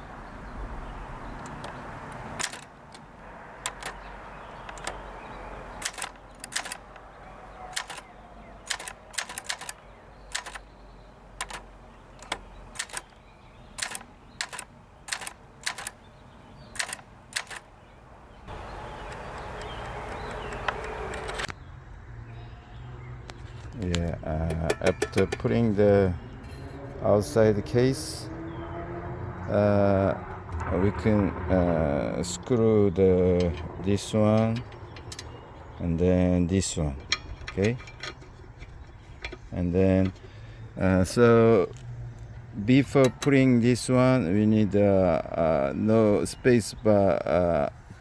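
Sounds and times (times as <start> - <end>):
typewriter keys clacking: 2.4 - 2.7, 5.8 - 7.0, 7.7 - 10.7, 11.4 - 13.2, 13.8 - 16.0, 16.8 - 17.6.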